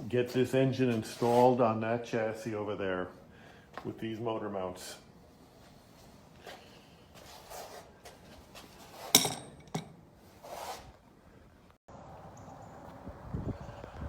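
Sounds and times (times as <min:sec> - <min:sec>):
metal parts knocking and clinking: 0:09.2 - 0:10.0
sharp metal clank: 0:09.2 - 0:10.0.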